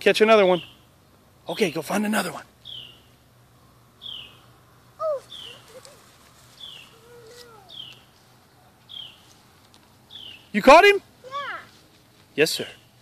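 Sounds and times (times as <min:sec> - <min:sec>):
bird chirping high: 0:00.4 - 0:01.0, 0:02.6 - 0:03.3, 0:04.0 - 0:09.4, 0:10.0 - 0:11.5
lower falling bird calls: 0:02.5 - 0:10.6.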